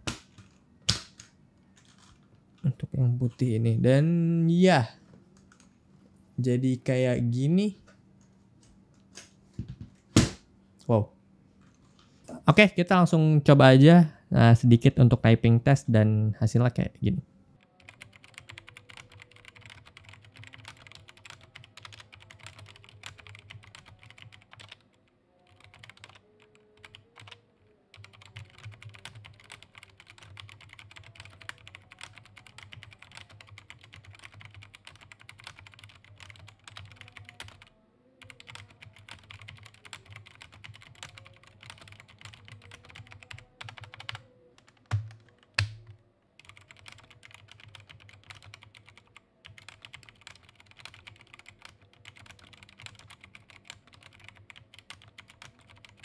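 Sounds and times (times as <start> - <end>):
mechanical keyboard typing: 17.7 - 24.9, 25.5 - 56.0.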